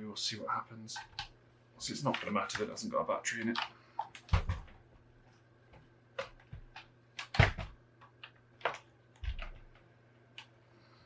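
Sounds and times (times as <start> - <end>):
laptop handling thumps: 4.1 - 4.8, 6.2 - 7.8.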